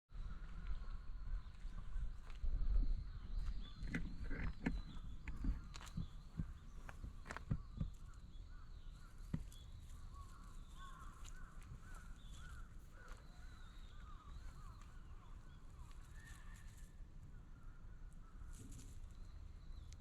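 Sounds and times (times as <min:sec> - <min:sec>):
birds calling faintly: 0:00.1 - 0:20.0.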